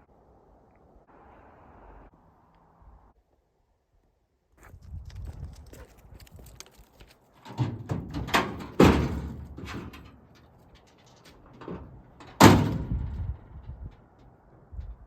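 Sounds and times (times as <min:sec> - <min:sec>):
knocks and clunks: 0:07.4 - 0:15.0.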